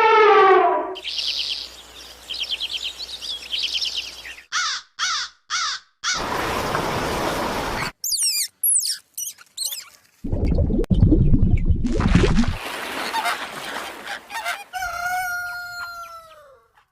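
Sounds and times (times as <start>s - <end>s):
loud falling bird calls: 1.0s - 9.8s.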